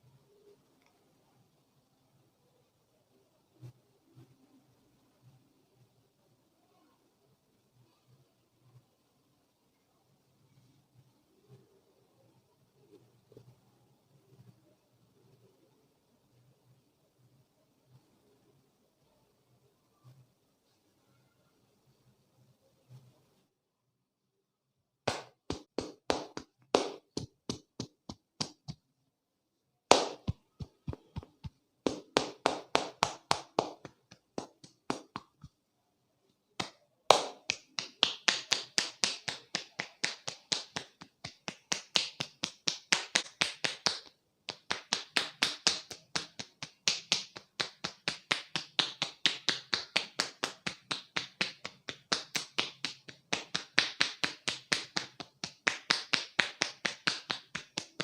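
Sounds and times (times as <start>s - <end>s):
rapid hand taps and slaps: 25.0s - 28.8s, 29.9s - 35.6s, 36.6s - 58.0s.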